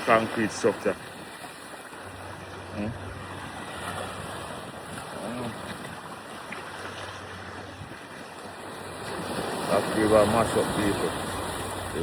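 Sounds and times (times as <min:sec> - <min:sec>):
wind on microphone: 0:07.3 - 0:12.0.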